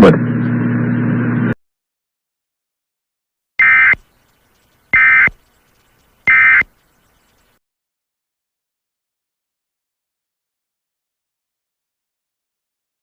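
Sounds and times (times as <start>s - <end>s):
buzzy warbling tone bursts: 3.6s - 4.0s, 5.0s - 5.4s, 6.3s - 6.7s.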